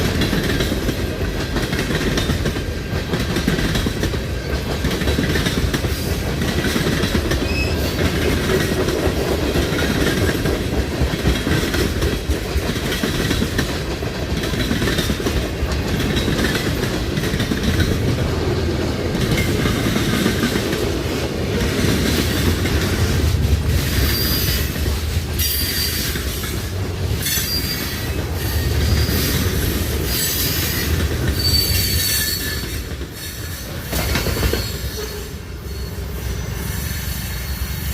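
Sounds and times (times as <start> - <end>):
wheels clacking over rail joints: 0.0 - 35.2
train cars rumbling on rails: 0.0 - 37.9
train wheels squealing: 7.3 - 8.7, 23.8 - 37.9.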